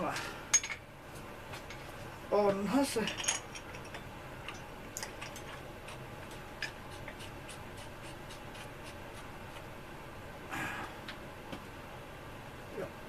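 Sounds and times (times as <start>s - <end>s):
small parts ticking and clicking: 3.1s - 7.3s.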